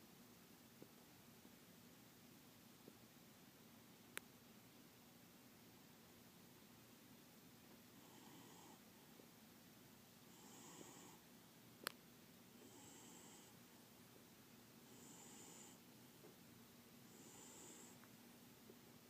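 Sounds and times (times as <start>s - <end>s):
cat snoring softly: 7.9s - 8.9s, 10.3s - 11.3s, 12.6s - 13.6s, 14.8s - 15.8s, 17.0s - 18.0s.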